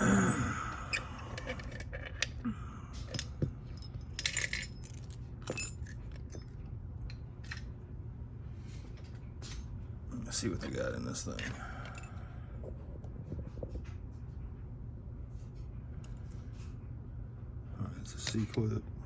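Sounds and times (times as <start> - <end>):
steady low hum: 0.0 - 19.0
small metal clicks and clinks: 3.0 - 7.7, 18.0 - 18.8.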